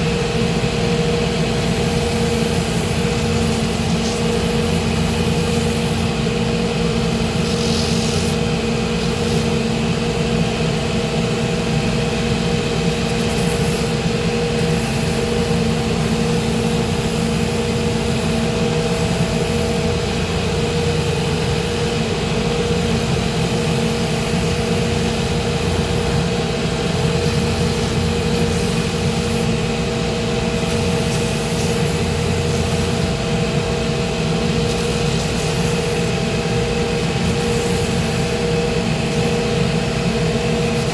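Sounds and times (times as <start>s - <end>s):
machine humming: 0.0s - 40.9s
sanding hiss: 7.0s - 8.4s.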